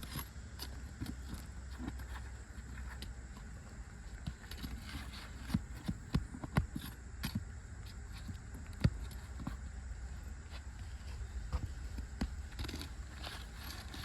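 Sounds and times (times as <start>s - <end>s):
knocks and clicks on shingles: 4.1s - 10.7s.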